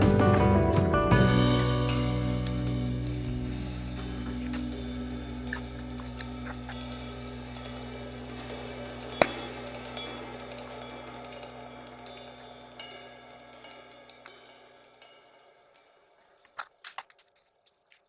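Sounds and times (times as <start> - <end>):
music with drums and cymbals: 0.0 - 16.2.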